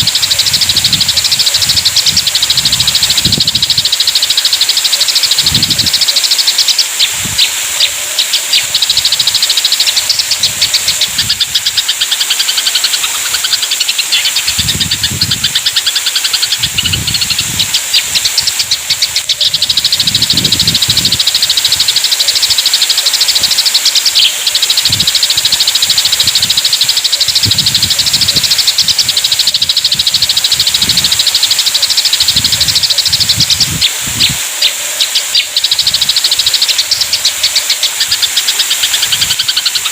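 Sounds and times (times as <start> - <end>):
sparrows chirping: 0.0 - 39.9
steady high hiss: 0.0 - 39.9.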